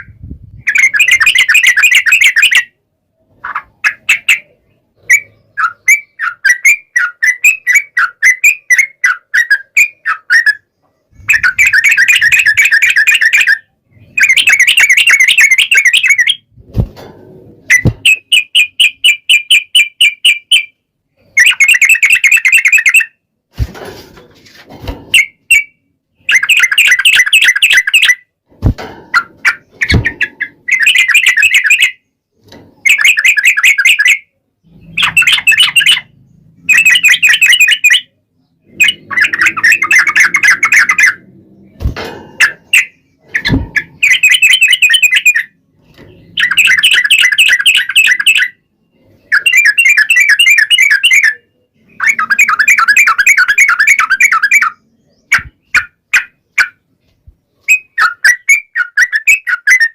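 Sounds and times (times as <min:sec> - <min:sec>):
bulbul song with rapid trills: 0:03.4 - 0:16.8, 0:28.8 - 0:32.1, 0:32.8 - 0:56.8.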